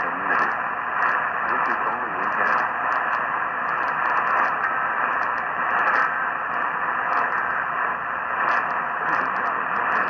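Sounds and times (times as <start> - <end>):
radio static hiss: 0.0 - 10.0
static crackles: 0.0 - 10.0.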